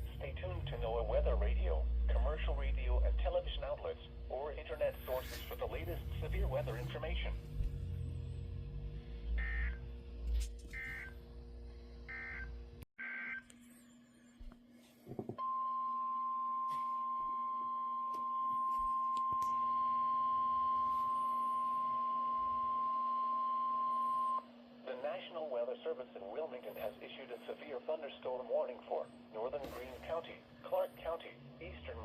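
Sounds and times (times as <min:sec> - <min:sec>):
low steady hum: 0:00.0 - 0:32.0
steady warning alarm tone: 0:01.9 - 0:11.4, 0:12.0 - 0:13.5, 0:15.4 - 0:24.6.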